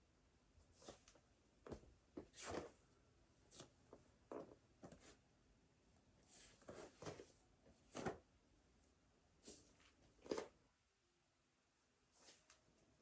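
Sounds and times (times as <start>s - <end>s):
soft contact on mat: 12.1s - 12.6s.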